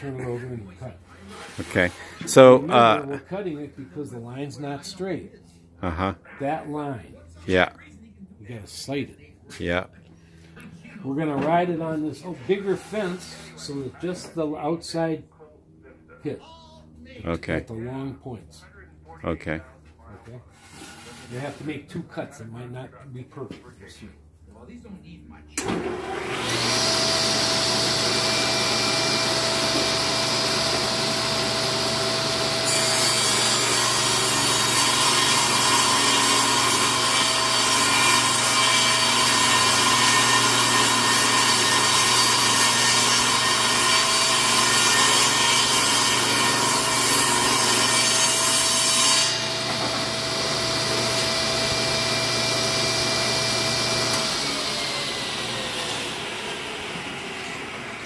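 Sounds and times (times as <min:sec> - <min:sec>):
power saw cutting wood: 0:00.0 - 0:03.2, 0:11.4 - 0:14.3, 0:20.5 - 0:21.9, 0:25.6 - 0:58.0.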